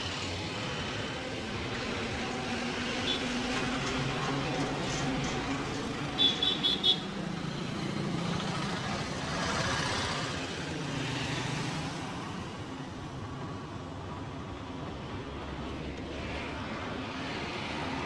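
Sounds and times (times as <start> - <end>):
vehicle engines humming: 0.0 - 18.0.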